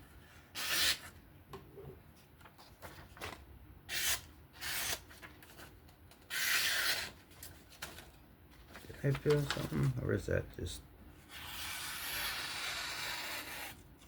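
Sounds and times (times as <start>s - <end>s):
knife slicing paper: 11.3s - 13.8s.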